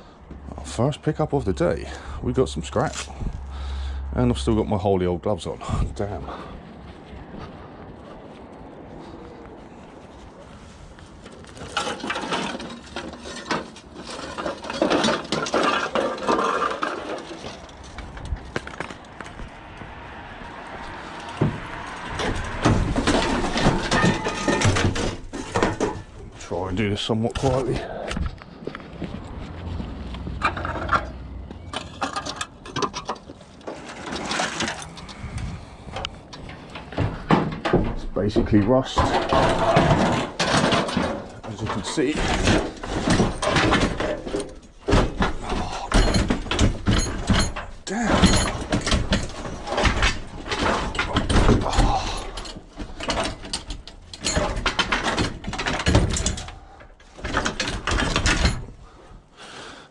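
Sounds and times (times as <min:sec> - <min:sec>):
scrap metal clanking and scraping: 0:10.2 - 0:19.5, 0:20.8 - 0:59.3.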